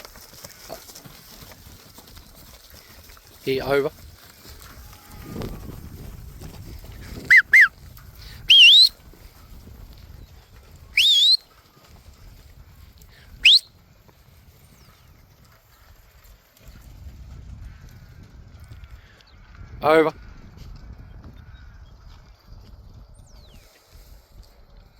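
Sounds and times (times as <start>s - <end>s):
dog handler whistling: 7.3s - 7.7s, 8.4s - 9.0s, 11.0s - 11.4s, 13.4s - 13.7s.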